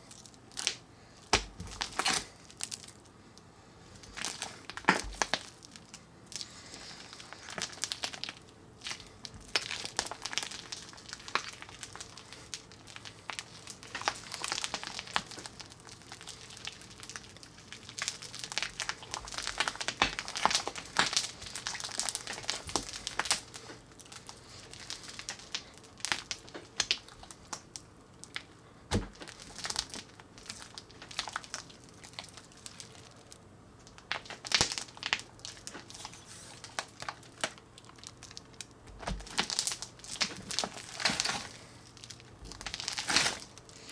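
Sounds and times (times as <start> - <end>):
slime squishing crackles: 0.0 - 43.9.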